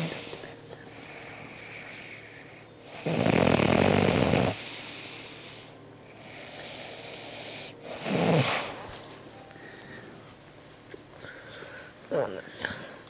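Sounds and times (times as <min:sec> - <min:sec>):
man snoring: 0:00.0 - 0:00.5, 0:02.9 - 0:08.8
quiet breath: 0:00.0 - 0:02.8, 0:04.6 - 0:10.4, 0:11.2 - 0:13.0.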